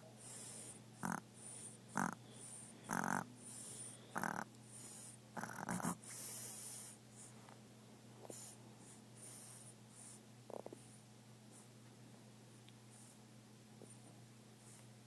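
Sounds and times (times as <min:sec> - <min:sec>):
animal snoring: 0:00.2 - 0:07.0, 0:09.2 - 0:11.0.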